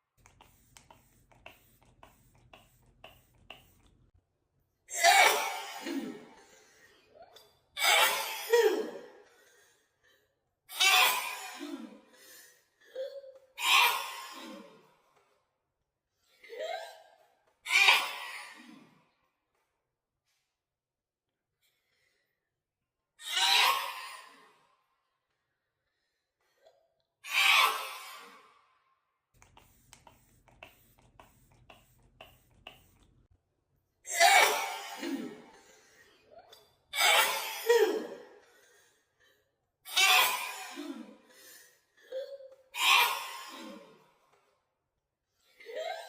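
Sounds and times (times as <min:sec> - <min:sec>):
woman sneezing: 0:04.9 - 0:06.4, 0:34.1 - 0:35.6, 0:39.9 - 0:41.2.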